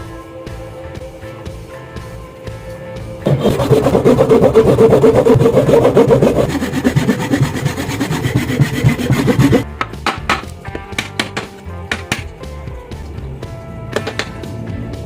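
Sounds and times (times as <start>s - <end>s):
saw rasping through wood: 3.2s - 9.6s.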